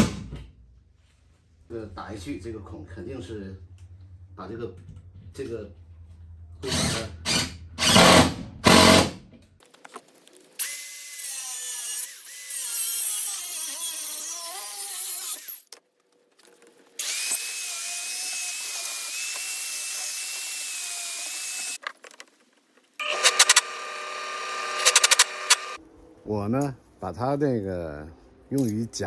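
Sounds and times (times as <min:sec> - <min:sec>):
power drill boring: 0:06.7 - 0:09.1, 0:10.6 - 0:15.6, 0:17.0 - 0:21.8, 0:23.0 - 0:25.8.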